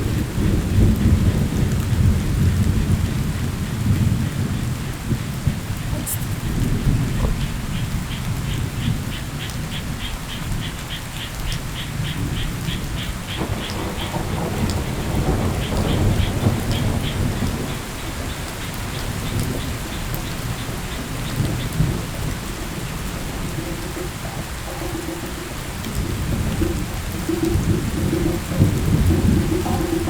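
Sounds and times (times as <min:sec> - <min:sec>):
thunder rumbling: 0:00.0 - 0:09.7, 0:13.2 - 0:30.0
steady rain: 0:00.0 - 0:30.0.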